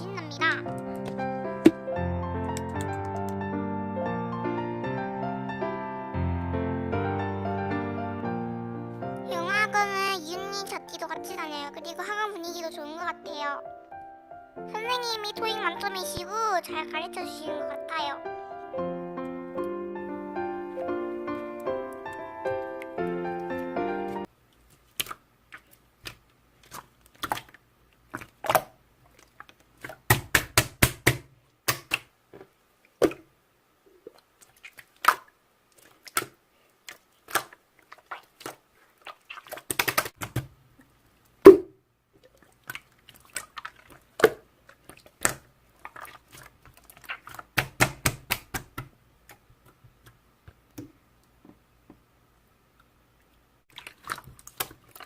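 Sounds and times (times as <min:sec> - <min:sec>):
slime clicking and popping: 0:39.5 - 0:40.4.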